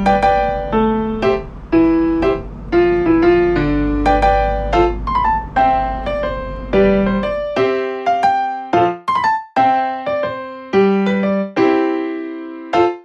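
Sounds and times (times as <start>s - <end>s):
low steady hum: 0.0s - 7.6s
piano melody: 0.0s - 13.0s.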